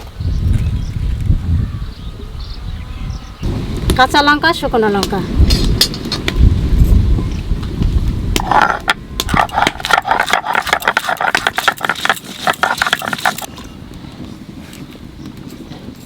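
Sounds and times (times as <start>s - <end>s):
hard objects clattering and scraping: 8.4s - 13.5s.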